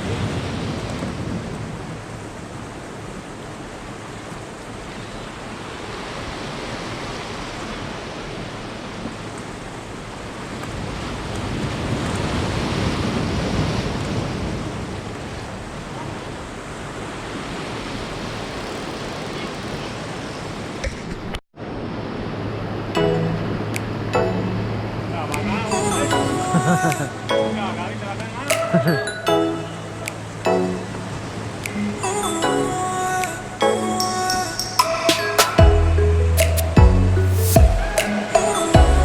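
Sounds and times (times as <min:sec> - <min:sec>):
sea surf washing in: 0:00.0 - 0:39.0
wind buffeting microphone: 0:07.9 - 0:21.3.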